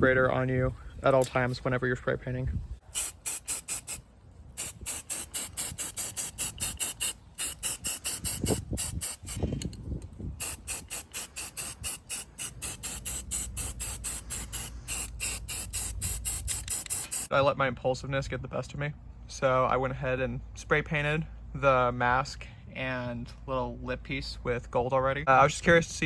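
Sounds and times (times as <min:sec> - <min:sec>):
aerosol can spraying in pulses: 0:02.8 - 0:04.0, 0:04.6 - 0:09.6, 0:10.4 - 0:17.3.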